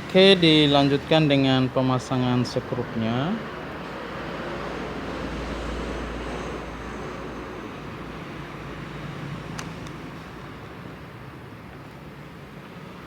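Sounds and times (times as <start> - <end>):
road traffic rumble: 0.0 - 13.0
small clicks: 9.6 - 10.0.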